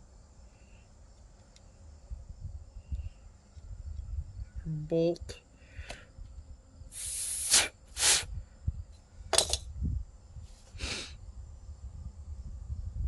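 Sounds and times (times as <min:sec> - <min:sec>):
pressurized spray hissing bursts: 0:06.9 - 0:08.3.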